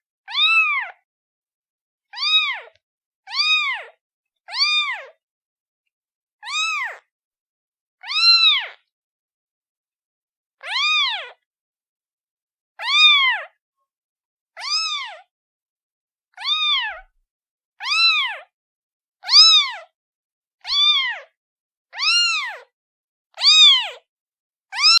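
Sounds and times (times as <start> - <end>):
kitten meowing: 0.3 - 1.0, 2.1 - 5.2, 6.4 - 7.1, 8.0 - 8.8, 10.6 - 11.4, 12.8 - 13.6, 14.6 - 15.3, 16.3 - 17.1, 17.8 - 18.5, 19.2 - 19.9, 20.6 - 21.3, 22.0 - 22.7, 23.3 - 24.0, 24.7 - 25.0.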